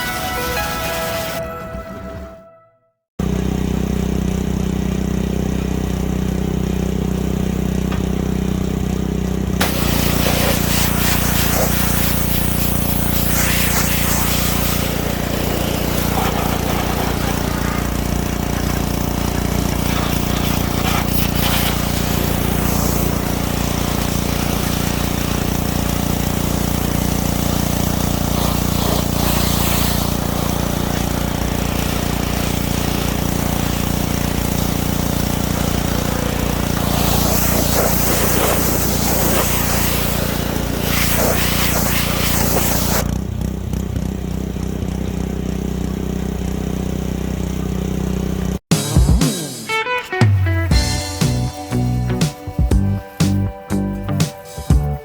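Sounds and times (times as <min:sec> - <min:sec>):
small gasoline engine running: 0:03.2 - 0:49.7, 0:50.7 - 0:55.0
high-pressure spray hissing: 0:09.6 - 0:43.1.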